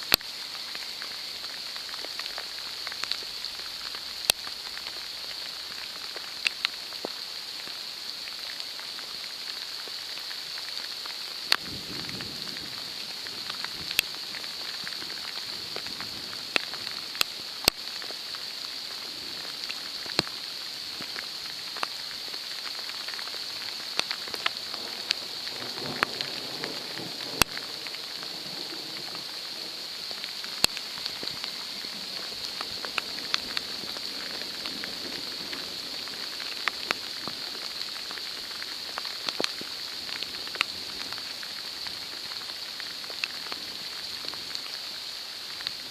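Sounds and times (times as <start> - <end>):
steady rain: 0.0 - 45.9
distant thunder rumble: 24.8 - 36.2.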